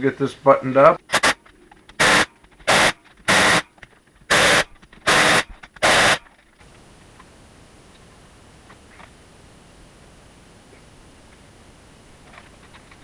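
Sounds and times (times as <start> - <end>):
compressed-air tool hiss bursts: 1.1 - 1.4, 2.0 - 3.7, 4.3 - 6.3.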